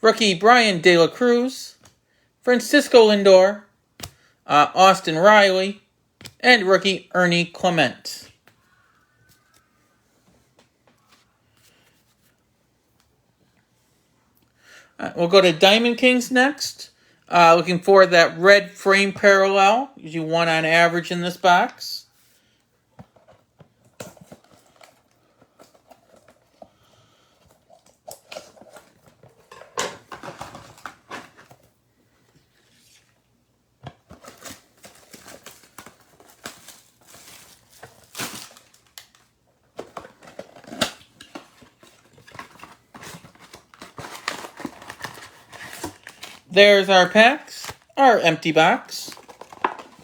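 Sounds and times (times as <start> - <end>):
cardboard rustling: 23.0 - 31.8, 33.9 - 50.0
shrink wrap crinkling and tearing: 34.0 - 50.0.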